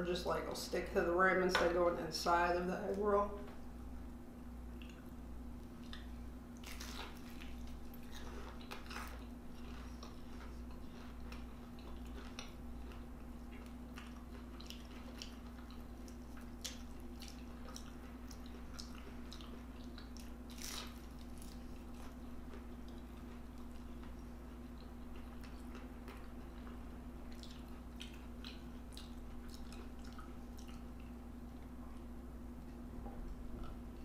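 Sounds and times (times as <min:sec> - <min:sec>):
low hum: 0:00.0 - 0:34.0
chewing and biting food: 0:04.8 - 0:31.7.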